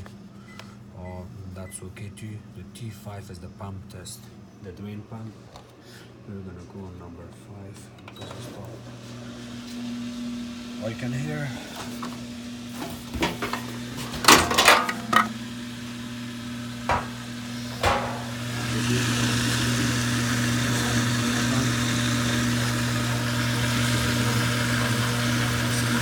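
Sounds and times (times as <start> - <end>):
washer drain pump humming: 7.8 - 26.0.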